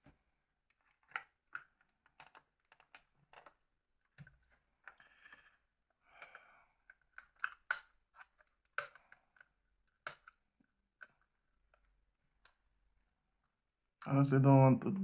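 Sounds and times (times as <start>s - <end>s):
phone parts clicking and tapping: 0.8s - 5.0s, 6.2s - 10.4s.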